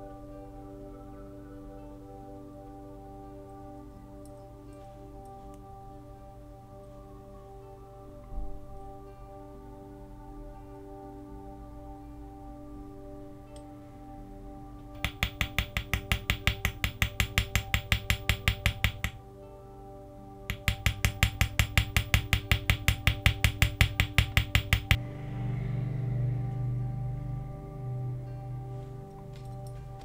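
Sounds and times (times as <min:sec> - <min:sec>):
small hammer tapping on metal: 0:15.0 - 0:19.2, 0:20.5 - 0:25.0.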